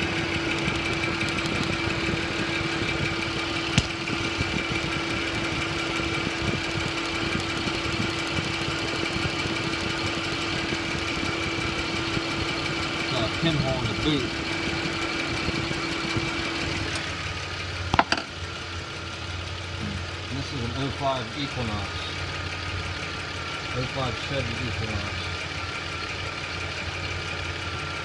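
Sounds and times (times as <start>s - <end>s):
car engine idling: 0.0s - 28.0s.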